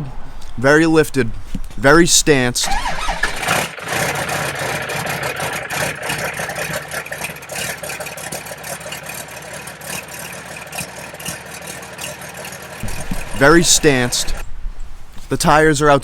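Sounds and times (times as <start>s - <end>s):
diesel truck engine idling: 2.6s - 14.4s.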